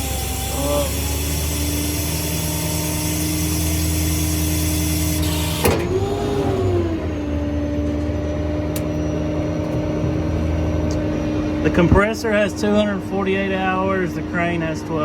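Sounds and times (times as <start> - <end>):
hydraulic hiss: 0.0 - 5.8
diesel engine and hydraulic pump: 0.0 - 15.0.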